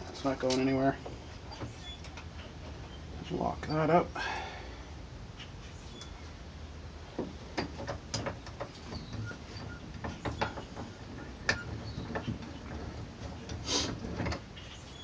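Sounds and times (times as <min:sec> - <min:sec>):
metal clicks and knocks: 0:07.2 - 0:14.6.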